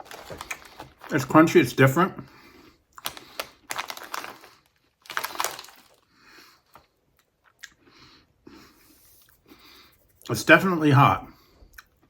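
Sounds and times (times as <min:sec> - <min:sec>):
crunching potato chips: 0:00.0 - 0:01.6, 0:02.9 - 0:07.7.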